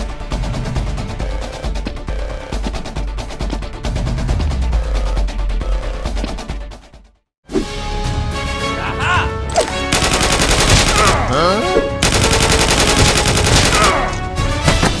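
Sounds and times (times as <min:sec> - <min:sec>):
rapid gunfire: 0:09.9 - 0:11.4, 0:12.0 - 0:14.2.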